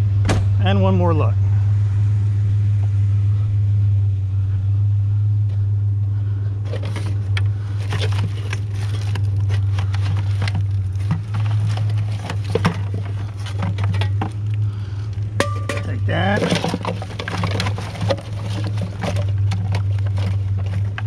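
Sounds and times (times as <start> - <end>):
truck engine idling: 0.0 - 21.0
scrap metal clinking and scraping: 6.6 - 21.0.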